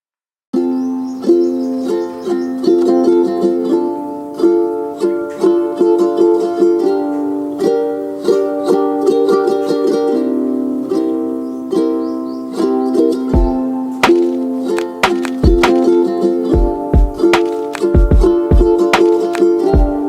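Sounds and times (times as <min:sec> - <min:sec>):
plucked string music: 0:00.5 - 0:20.0.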